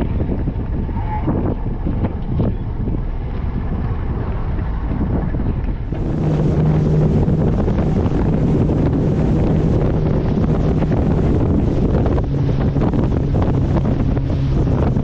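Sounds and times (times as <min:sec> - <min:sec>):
wind buffeting microphone: 0:00.0 - 0:15.0
boat motor humming: 0:02.0 - 0:15.0.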